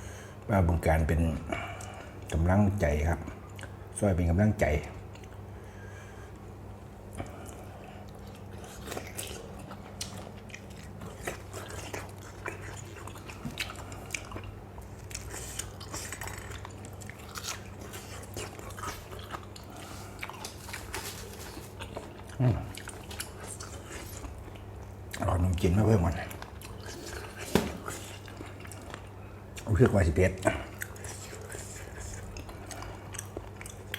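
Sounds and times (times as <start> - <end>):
steady low hum: 0.0 - 33.9
wet crunchy chewing: 7.2 - 29.7, 30.4 - 33.9.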